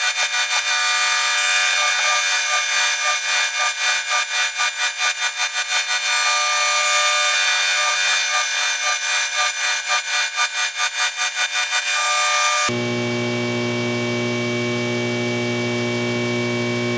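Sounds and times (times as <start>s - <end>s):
grinding wheel grinding cast iron: 0.0s - 12.7s
steady motor hum: 8.1s - 16.9s.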